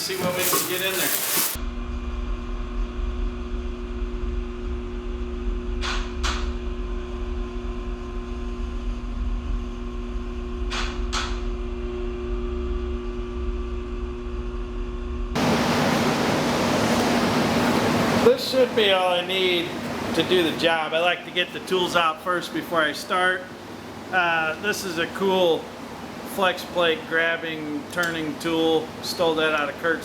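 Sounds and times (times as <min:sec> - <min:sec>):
even hiss: 0:00.0 - 0:01.6
mechanical hum with low rumble: 0:00.0 - 0:30.0.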